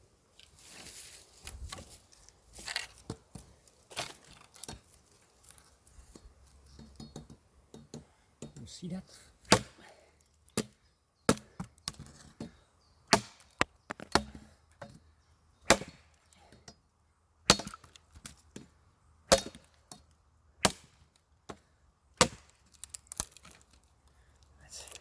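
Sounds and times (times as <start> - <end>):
machete chopping wood: 9.5 - 9.9, 10.5 - 12.1, 13.1 - 14.9, 15.6 - 16.1, 17.4 - 18.7, 19.3 - 20.0, 20.6 - 21.6, 22.2 - 23.3.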